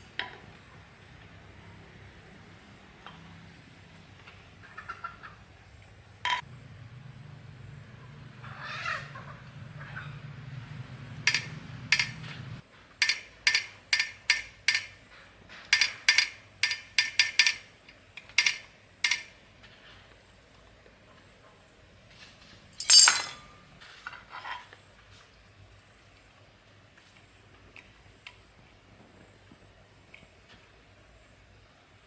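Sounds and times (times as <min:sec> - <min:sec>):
metal clinking: 0:22.8 - 0:23.6.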